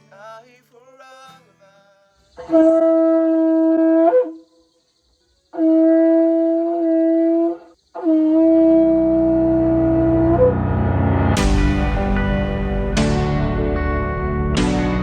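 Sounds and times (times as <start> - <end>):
soft ambient music: 9.4 - 15.0.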